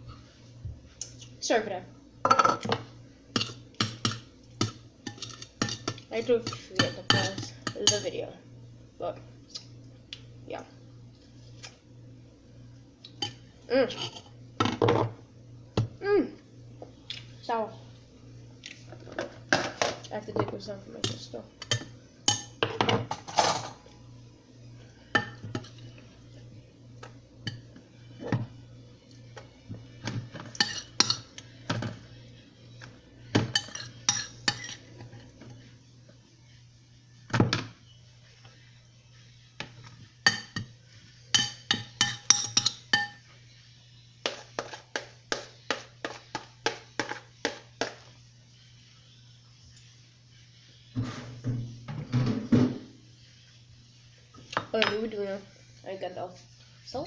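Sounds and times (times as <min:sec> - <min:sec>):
metal cutlery clinking against a dish: 0:23.1 - 0:23.9.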